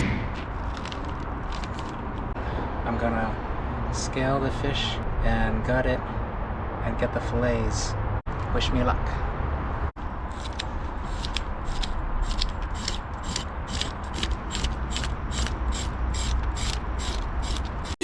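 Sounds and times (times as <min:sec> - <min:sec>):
low rumble: 0:00.0 - 0:03.9.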